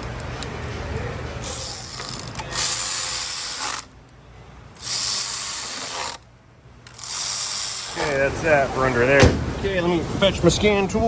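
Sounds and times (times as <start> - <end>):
power ratchet running: 1.4 - 3.9, 4.8 - 6.2, 6.9 - 8.2.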